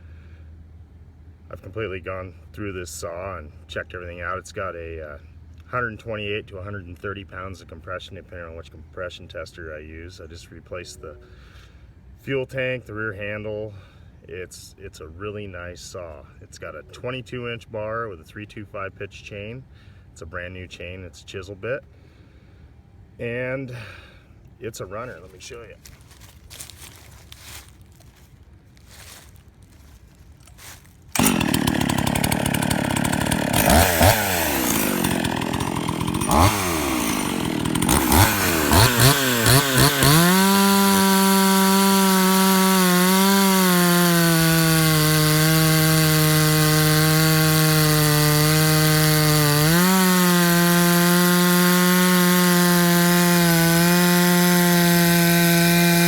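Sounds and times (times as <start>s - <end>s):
chainsaw starting and revving: 28.9s - 56.0s.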